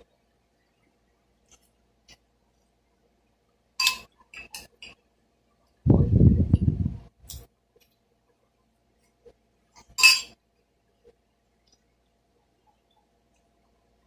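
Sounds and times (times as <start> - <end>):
cutlery clinking against plate: 3.8 - 5.0, 9.8 - 10.4
muffled low-pitched noise: 5.9 - 7.1.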